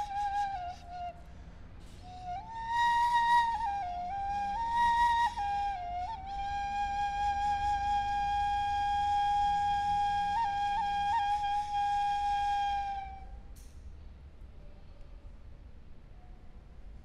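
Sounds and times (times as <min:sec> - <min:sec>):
flute holding long note: 0:00.0 - 0:13.4.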